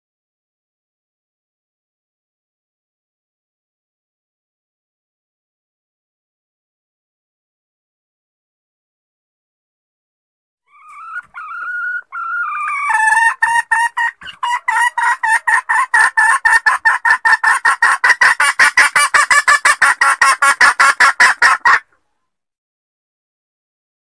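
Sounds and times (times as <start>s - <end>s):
hen clucking rapidly: 10.7s - 21.9s
junglefowl hen calling: 10.7s - 22.1s.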